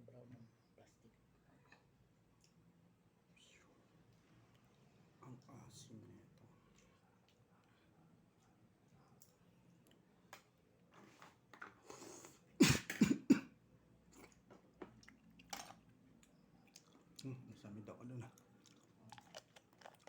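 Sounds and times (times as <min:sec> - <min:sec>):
person coughing: 0:12.6 - 0:13.6.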